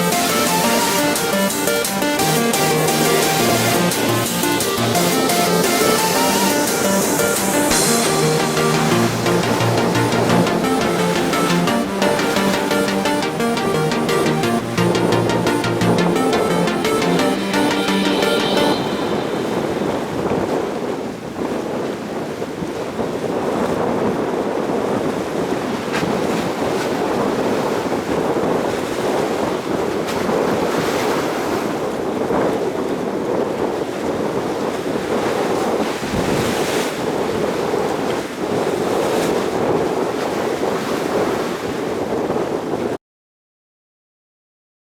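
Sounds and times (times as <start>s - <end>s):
wind on microphone: 0.0s - 16.2s, 17.4s - 43.0s
choppy sea water rushing: 0.0s - 43.0s.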